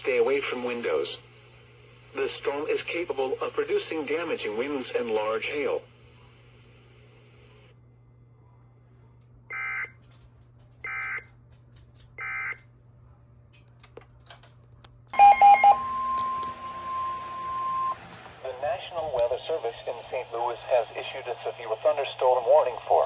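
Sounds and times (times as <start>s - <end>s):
low steady hum: 0.0s - 23.0s
steady warning alarm tone: 15.1s - 22.0s
loud pulsed beeps: 15.2s - 18.2s.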